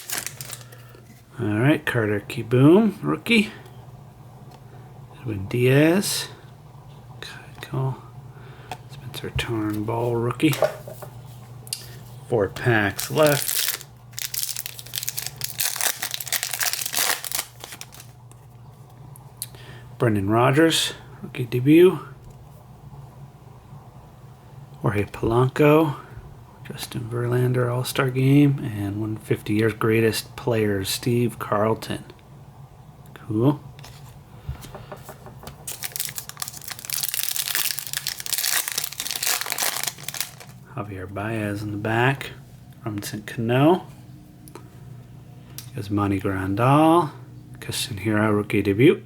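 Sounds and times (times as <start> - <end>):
wrapper tearing and crinkling: 0.0 - 0.8, 12.9 - 18.2, 35.6 - 40.6.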